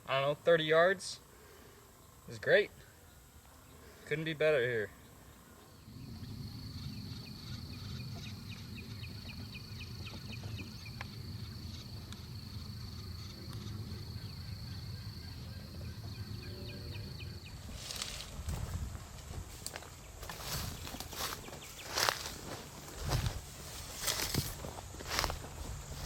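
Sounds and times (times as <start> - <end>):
high-pitched insect drone: 5.8 - 18.9, 19.6 - 26.0.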